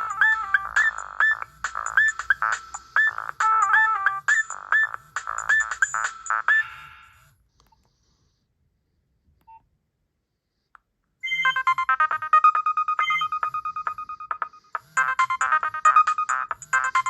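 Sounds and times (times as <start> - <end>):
phone ringtone electronic beeping: 0.0 - 7.3, 11.2 - 17.0.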